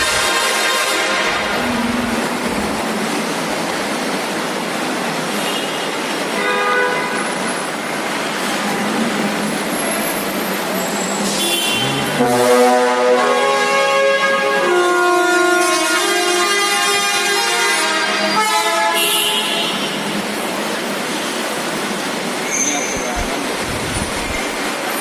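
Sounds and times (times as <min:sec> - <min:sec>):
truck rushing noise: 0:00.0 - 0:04.2, 0:22.2 - 0:25.0
short horn toots: 0:11.3 - 0:19.8.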